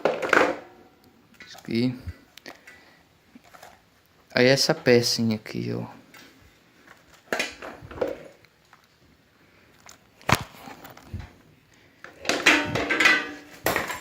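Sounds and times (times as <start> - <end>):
plastic parts scraping and rattling: 2.5 - 3.9, 6.1 - 9.0, 9.7 - 11.4, 12.0 - 14.0.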